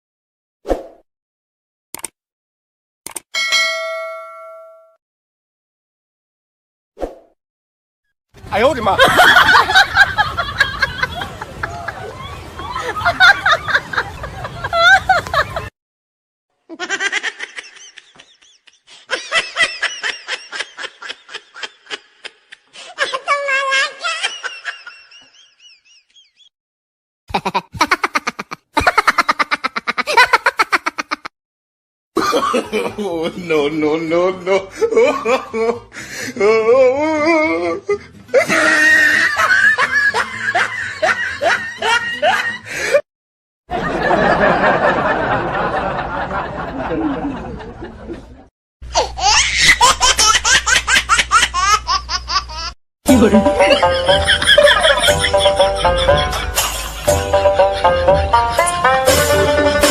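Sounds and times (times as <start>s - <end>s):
high-pitched laughing sound effect: 27.3s - 31.3s, 36.4s - 42.6s, 48.9s - 59.9s
person snickering: 27.3s - 31.3s.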